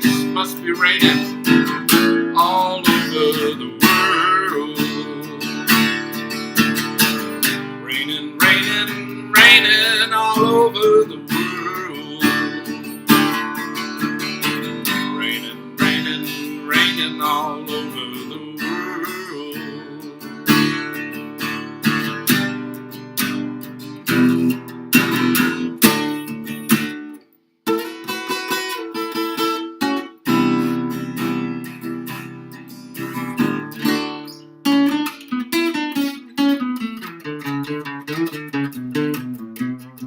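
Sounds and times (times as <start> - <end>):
acoustic guitar strumming chords: 0.0 - 40.0.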